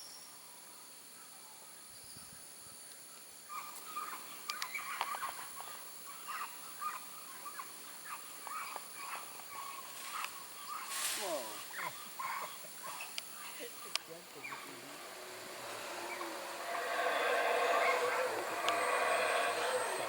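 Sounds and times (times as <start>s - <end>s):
high insect drone: 0.0s - 20.0s
harsh animal calls: 11.7s - 20.0s.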